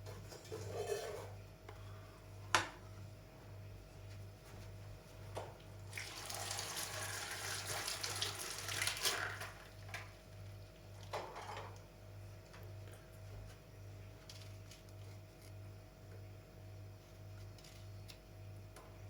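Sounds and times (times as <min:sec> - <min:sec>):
water running: 0:05.9 - 0:10.0.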